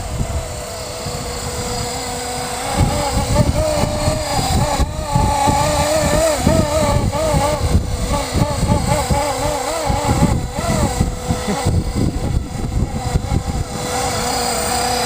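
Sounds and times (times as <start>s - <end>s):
model helicopter rotor whining: 0.0s - 15.0s
wind rumbling on microphone: 0.0s - 15.0s.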